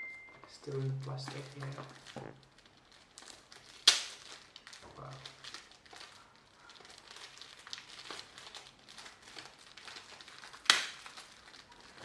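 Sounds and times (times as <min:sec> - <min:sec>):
plastic wrap crinkling: 0:00.4 - 0:12.0
sharp plastic snap: 0:10.6 - 0:11.0.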